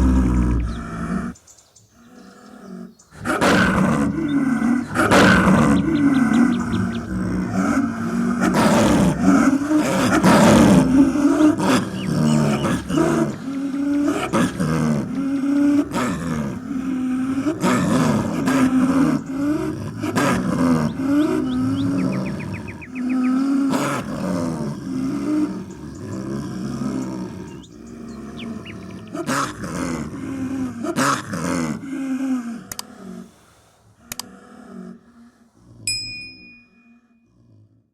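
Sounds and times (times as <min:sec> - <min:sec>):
snow leopard calling: 0:00.0 - 0:30.7
sharp clicks: 0:32.7 - 0:32.9, 0:34.1 - 0:34.3.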